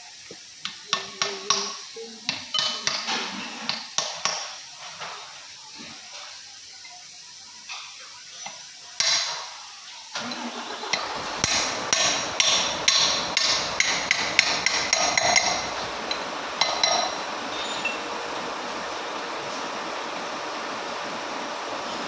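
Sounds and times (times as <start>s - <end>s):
steady background noise: 0.0s - 22.0s
hammer striking metal: 11.4s - 18.0s.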